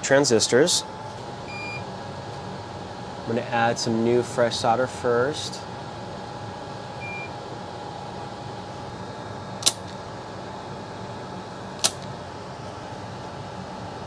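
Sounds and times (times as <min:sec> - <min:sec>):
fan hum: 0:00.0 - 0:14.0
sharp clicks: 0:09.6 - 0:10.0, 0:11.8 - 0:12.1.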